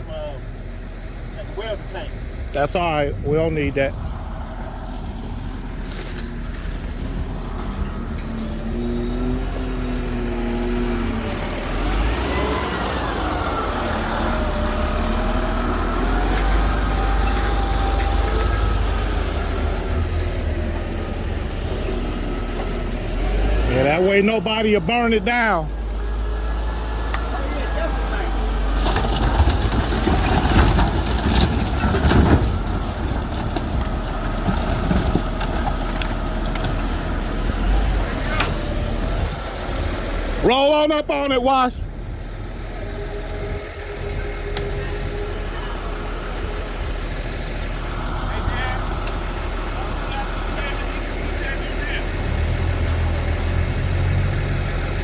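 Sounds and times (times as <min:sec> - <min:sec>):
heavy machine engine rumble: 0:00.0 - 0:55.0.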